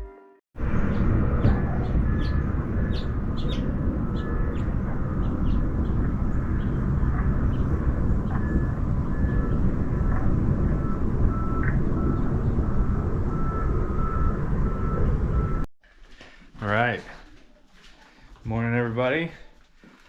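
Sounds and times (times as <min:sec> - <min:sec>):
low traffic rumble: 0:00.6 - 0:15.7.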